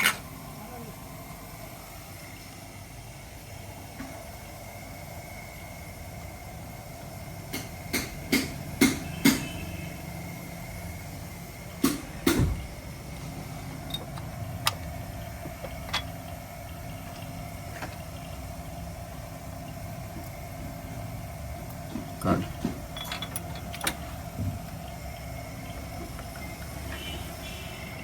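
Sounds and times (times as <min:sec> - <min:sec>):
steady mechanical hum: 0:00.0 - 0:28.0
sharp knocks on car: 0:11.8 - 0:12.6.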